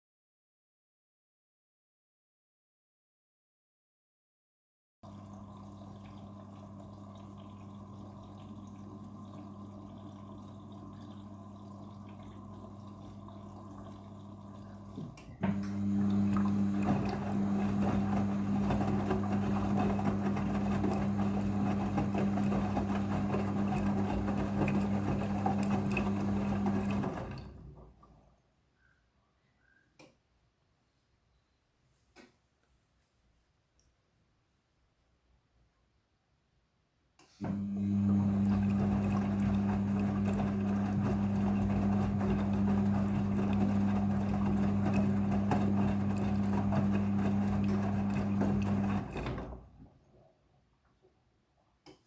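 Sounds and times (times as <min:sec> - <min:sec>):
washing machine hum: 0:05.0 - 0:28.2, 0:37.4 - 0:50.3.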